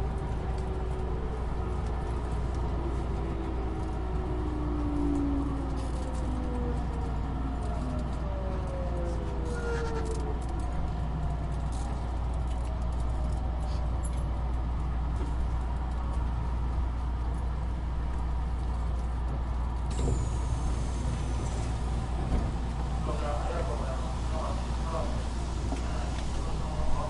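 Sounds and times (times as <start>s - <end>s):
electric train rumbling: 0.0s - 27.0s.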